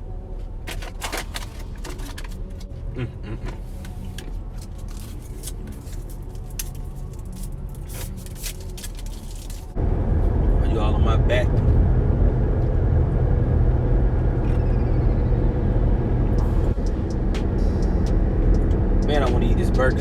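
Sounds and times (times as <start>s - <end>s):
packaging crinkling: 4.5s - 9.8s
car cabin rumble: 9.8s - 20.0s.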